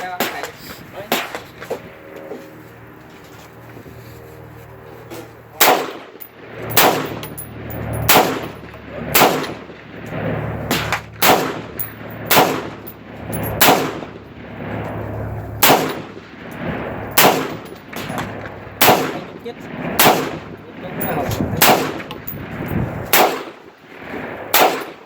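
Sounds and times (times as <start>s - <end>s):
rifle shots with echo: 5.6s - 15.0s, 15.6s - 25.0s.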